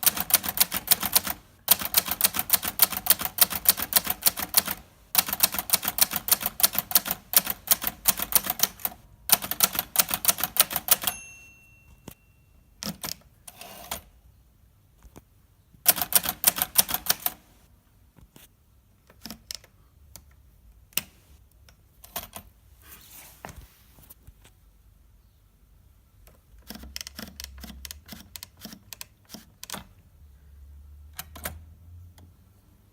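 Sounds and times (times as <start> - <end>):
typewriter typing: 0.0 - 11.3, 15.8 - 17.6, 26.6 - 29.9
typewriter bell ringing: 10.3 - 12.6.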